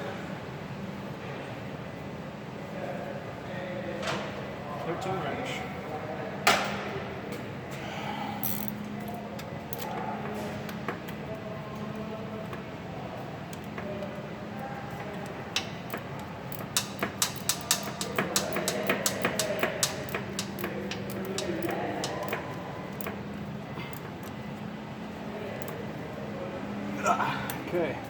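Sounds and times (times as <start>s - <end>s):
steady low hum: 4.6s - 28.0s
ratchet wrench clicking: 8.4s - 10.0s, 15.0s - 23.2s
light metal clinks: 15.0s - 23.2s
sharp metallic click: 15.6s - 23.2s.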